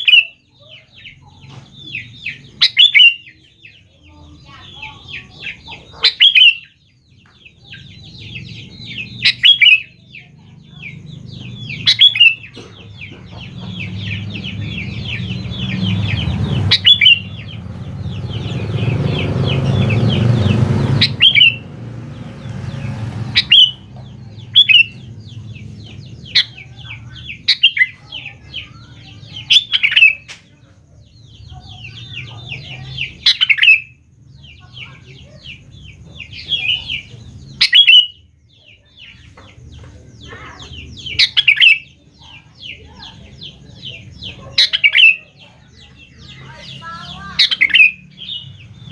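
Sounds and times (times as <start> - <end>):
loud sharp bird call: 0.0 - 3.4, 4.8 - 6.8, 10.8 - 21.7, 22.4 - 25.5, 26.2 - 30.4, 31.3 - 38.3, 40.2 - 42.0, 42.6 - 48.9
bird chattering chirps: 0.0 - 48.9.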